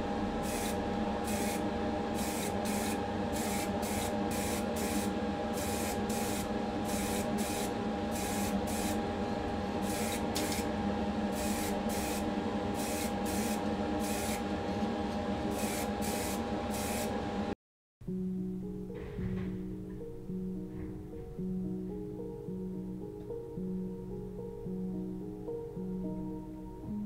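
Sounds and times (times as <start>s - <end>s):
motor hum: 0.0s - 17.5s
spray paint hissing bursts: 0.4s - 1.6s, 2.2s - 9.0s, 12.8s - 14.4s.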